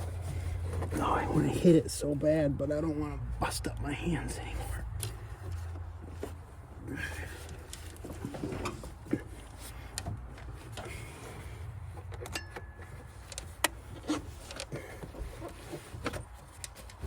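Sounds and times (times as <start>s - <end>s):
low steady rumble: 0.0s - 16.8s.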